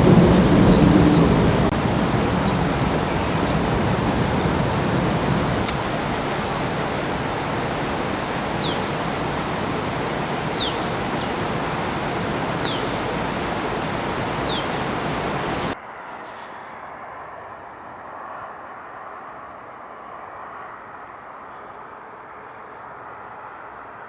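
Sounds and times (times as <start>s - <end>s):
steady rushing noise: 0.0s - 15.8s
songbird trilling and whistling: 0.6s - 15.7s.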